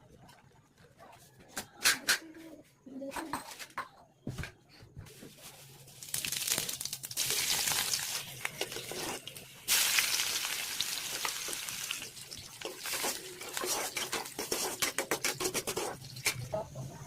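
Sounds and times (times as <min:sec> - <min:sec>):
noodles sizzling in a hot pan: 0:05.9 - 0:15.0.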